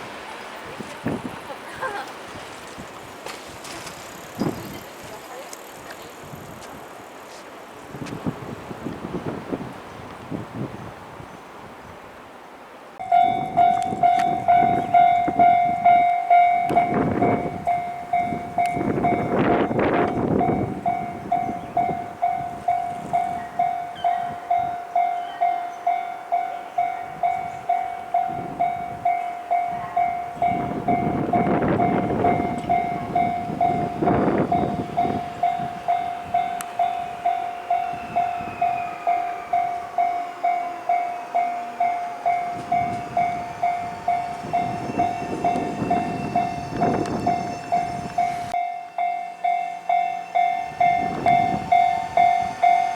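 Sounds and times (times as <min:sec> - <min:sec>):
electric train passing: 0:00.0 - 0:52.9
level-crossing bell clanging: 0:13.0 - 0:52.9.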